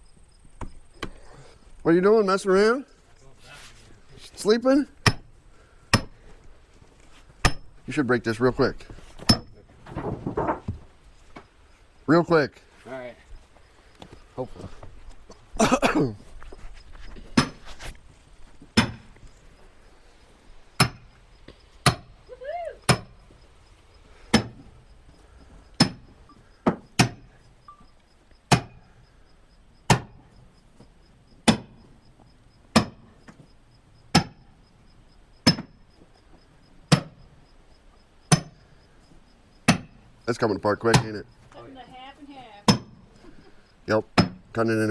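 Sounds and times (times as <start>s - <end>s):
splitting maul hitting log: 5.0s - 5.3s, 18.8s - 19.2s, 20.8s - 21.1s, 21.8s - 22.1s, 22.9s - 23.2s, 24.3s - 24.6s, 25.8s - 26.0s, 26.6s - 27.3s, 28.5s - 28.8s, 29.9s - 30.2s, 31.4s - 31.8s, 32.7s - 33.0s, 42.7s - 43.0s, 44.2s - 44.4s.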